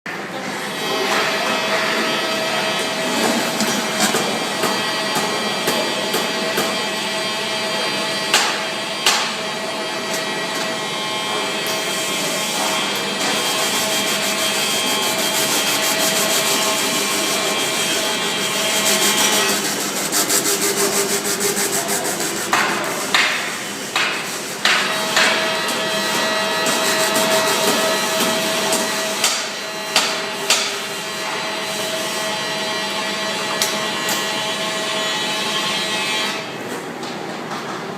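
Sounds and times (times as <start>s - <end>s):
welding machine humming: 11.9s - 29.4s.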